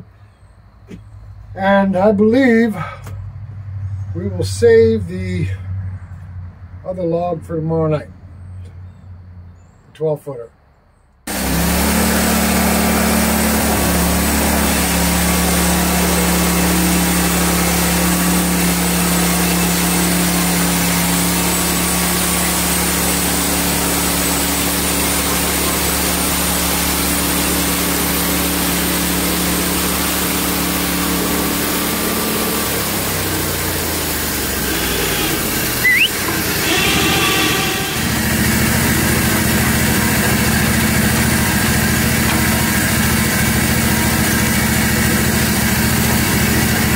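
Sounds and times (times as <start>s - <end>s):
sawmill gasoline engine running: 11.3s - 46.9s
brief squeak: 34.6s - 38.3s.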